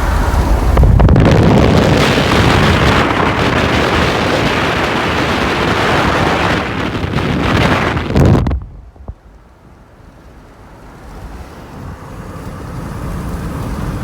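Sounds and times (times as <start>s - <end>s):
wind buffeting microphone: 0.0s - 9.8s
road noise: 0.0s - 14.0s.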